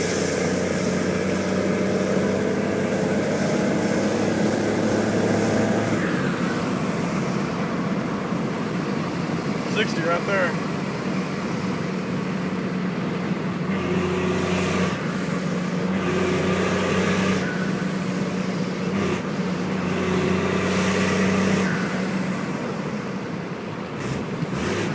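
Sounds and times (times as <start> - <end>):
diesel engine low drone: 0.0 - 24.9.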